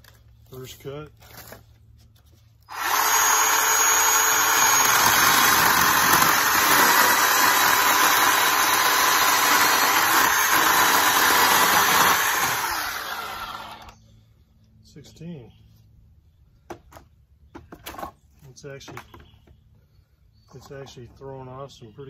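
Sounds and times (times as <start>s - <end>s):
electric chainsaw cutting wood: 2.7s - 14.0s.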